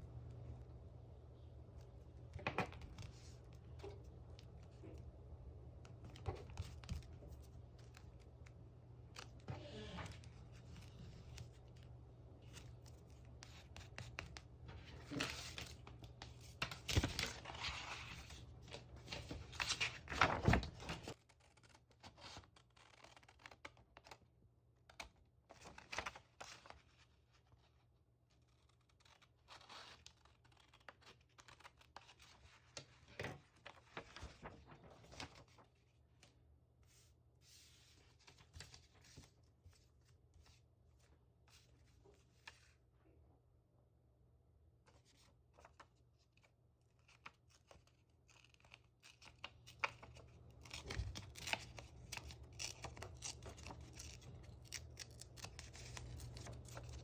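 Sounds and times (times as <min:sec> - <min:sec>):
low steady hum: 0:00.0 - 0:21.1
paper tearing and rustling: 0:19.0 - 0:23.6, 0:47.5 - 0:57.0.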